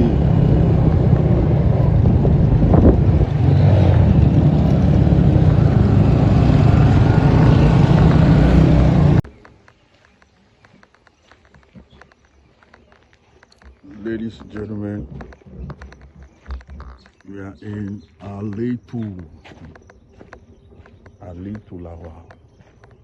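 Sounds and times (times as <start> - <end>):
wind buffeting microphone: 0.0 - 9.3, 13.6 - 23.0
moving vehicle rumble: 0.0 - 23.0
faint ticks: 9.2 - 23.0.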